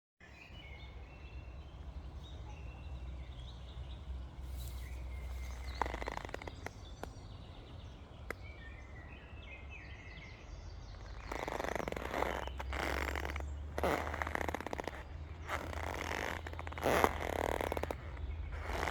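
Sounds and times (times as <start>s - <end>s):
rubber boots creaking: 4.6s - 7.1s, 11.0s - 18.9s.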